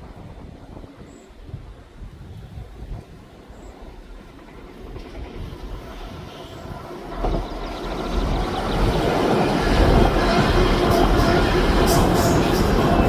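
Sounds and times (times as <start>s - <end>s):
train rumble: 0.0s - 13.0s.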